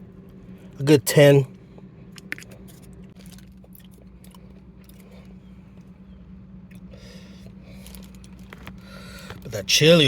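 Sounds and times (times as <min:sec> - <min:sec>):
low steady hum: 0:00.0 - 0:10.0
person chewing noodles: 0:02.1 - 0:05.8.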